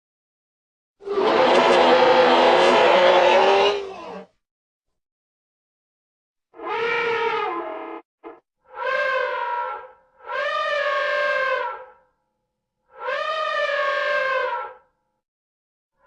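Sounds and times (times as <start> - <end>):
elephant trumpeting: 1.0 - 4.3, 6.6 - 7.8, 8.8 - 11.8.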